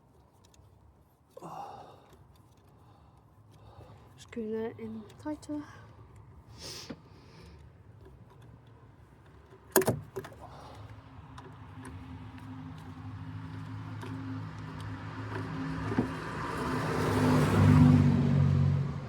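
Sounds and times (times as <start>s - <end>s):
vehicle engine hum: 1.4s - 19.0s
light tool ticks: 7.3s - 16.2s.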